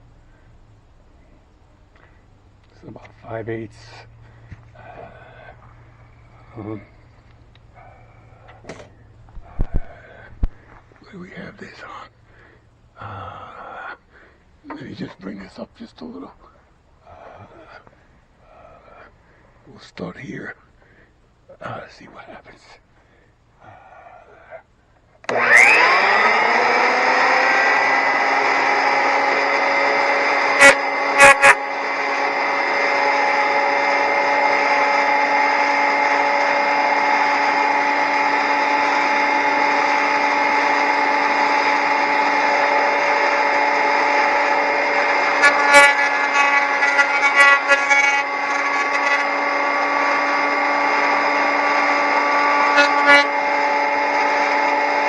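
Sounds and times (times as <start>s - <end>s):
planer motor whining: 25.2s - 55.0s.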